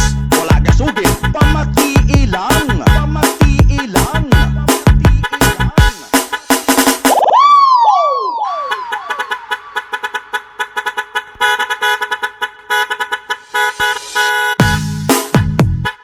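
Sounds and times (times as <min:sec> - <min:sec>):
chopped truck horn chord: 0:00.0 - 0:07.1, 0:08.9 - 0:16.0
heavy bass and beat: 0:00.0 - 0:07.3, 0:13.4 - 0:16.0
swooping pitch-falling effect: 0:07.1 - 0:09.2.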